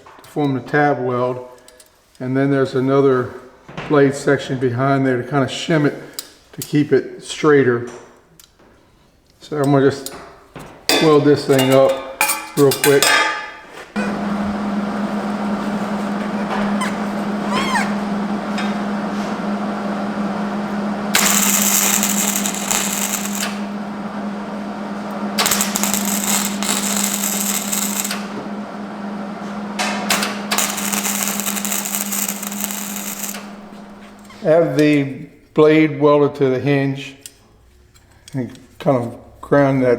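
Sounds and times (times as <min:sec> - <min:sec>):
electrical hum: 0:13.9 - 0:35.2
welding arc crackle: 0:14.0 - 0:34.4.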